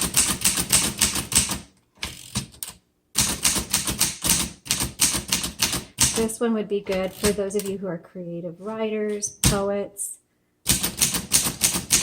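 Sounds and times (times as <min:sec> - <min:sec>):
manual typewriter typing: 0:00.0 - 0:07.8, 0:10.7 - 0:12.0.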